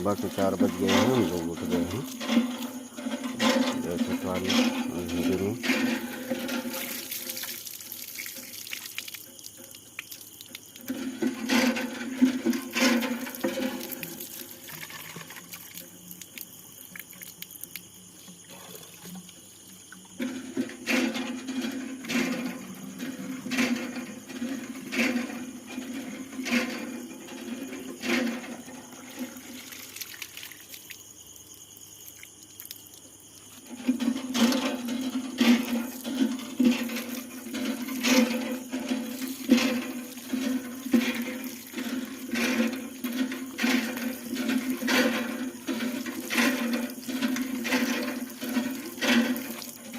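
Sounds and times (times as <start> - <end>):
water running from a tap: 0.0 - 3.0, 3.7 - 19.1, 29.0 - 31.1, 35.5 - 49.9
knocks and clatter: 0.0 - 7.6, 10.8 - 15.5, 20.0 - 29.6, 33.6 - 49.9.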